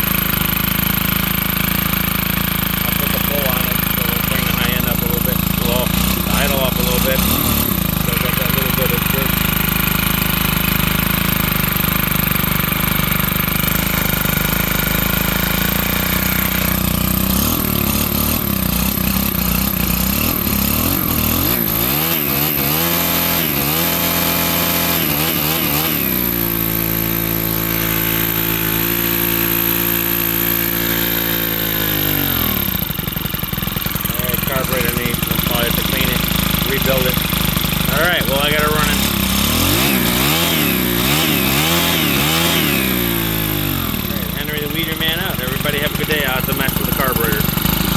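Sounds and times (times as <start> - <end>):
small engine idling and revving: 0.0 - 47.9
man talking: 2.8 - 7.3, 8.0 - 9.4, 34.2 - 37.2, 37.9 - 39.2, 44.1 - 47.5.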